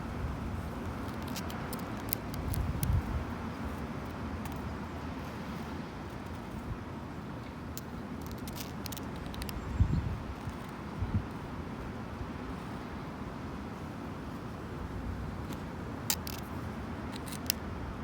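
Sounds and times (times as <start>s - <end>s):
road traffic: 0.0s - 18.0s
fingernails clicking on wood: 1.1s - 3.0s, 8.2s - 9.6s
wind gusts on microphone: 2.3s - 3.8s, 9.2s - 12.6s.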